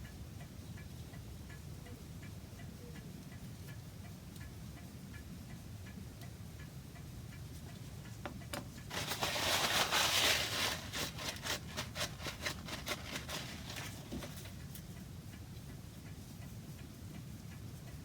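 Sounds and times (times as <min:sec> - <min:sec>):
rubbing over carved wood: 0:08.9 - 0:14.5.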